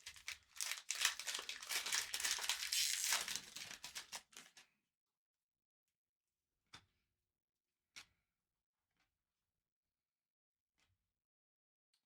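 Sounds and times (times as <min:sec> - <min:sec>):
plastic wrapper crinkling: 0:00.0 - 0:04.6.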